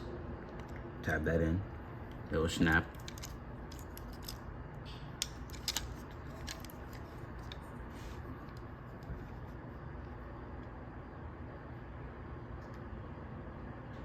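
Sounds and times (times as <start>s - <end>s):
steady low hum: 0.0s - 14.0s
plastic parts clicking: 2.9s - 4.4s, 5.2s - 7.6s.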